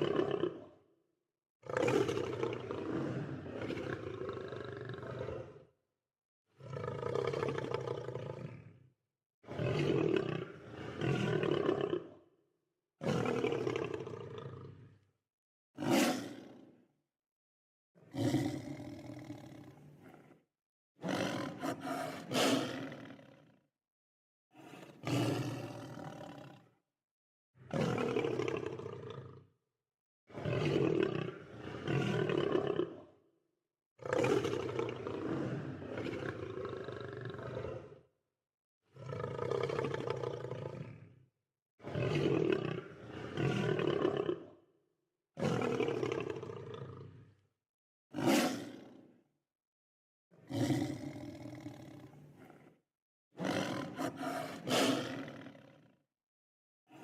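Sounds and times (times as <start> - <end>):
lions roaring and growling: 53.4 - 55.7.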